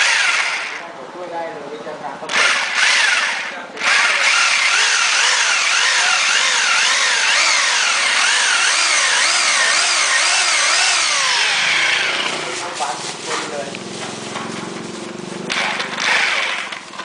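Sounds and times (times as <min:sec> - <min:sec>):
electric drill boring into tile: 0:00.0 - 0:00.8, 0:02.3 - 0:12.5, 0:15.5 - 0:16.8.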